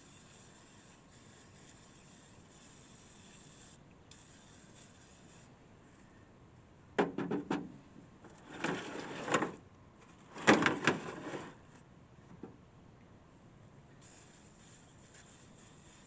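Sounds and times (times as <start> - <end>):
spray bottle spraying: 14.0 - 16.0.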